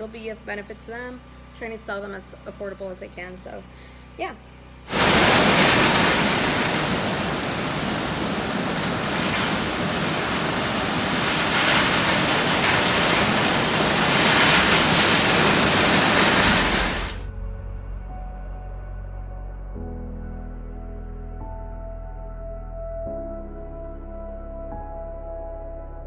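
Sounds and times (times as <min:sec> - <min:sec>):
water rushing: 0:04.9 - 0:17.2.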